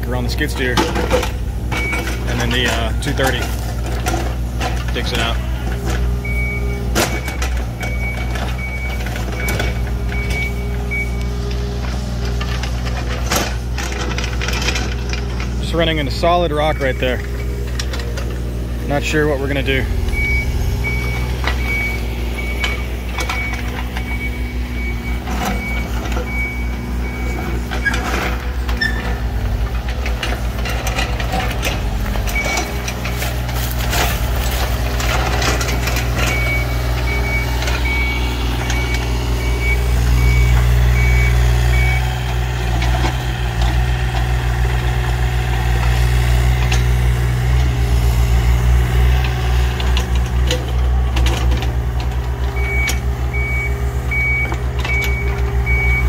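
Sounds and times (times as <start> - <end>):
excavator engines running: 0.0 - 56.0
backup alarm beeping: 1.7 - 3.0, 6.2 - 11.4, 19.7 - 28.0, 32.3 - 32.8, 35.2 - 42.6, 52.6 - 56.0.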